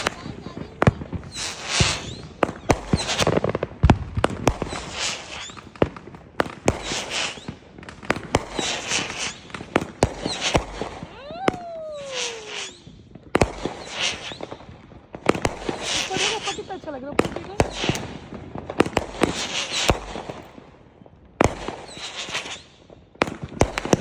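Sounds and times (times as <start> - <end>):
firework shells bursting: 0.0 - 14.5, 15.3 - 20.4
firework crackle: 0.0 - 24.0
falling firework whistle: 1.2 - 3.5, 4.5 - 5.7, 6.7 - 7.6, 10.1 - 14.6, 15.8 - 16.9, 21.8 - 22.8.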